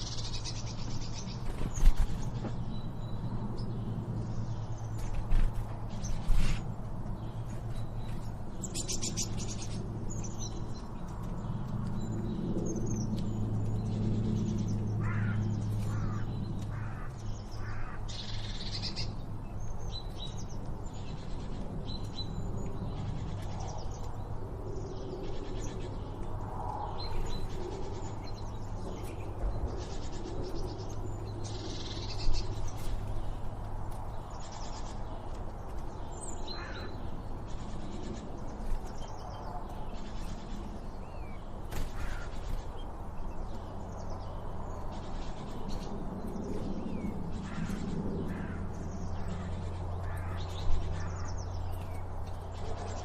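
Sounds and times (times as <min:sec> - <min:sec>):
harsh bird calls: 0:15.0 - 0:19.2, 0:40.5 - 0:43.0.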